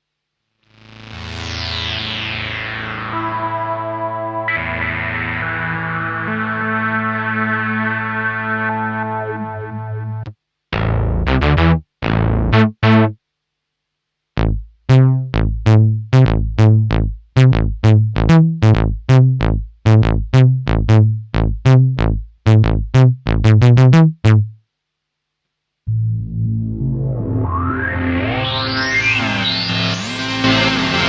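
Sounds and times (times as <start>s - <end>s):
synthesizer plucky bass notes: 9.4s - 13.2s, 14.4s - 24.6s, 25.9s - 29.7s.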